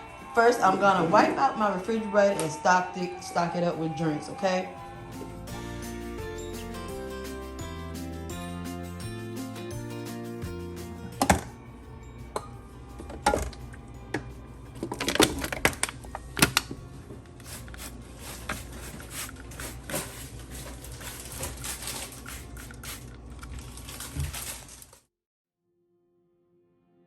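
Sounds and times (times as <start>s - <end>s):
soft background music: 0.0s - 22.1s
household items clattering: 14.2s - 25.0s.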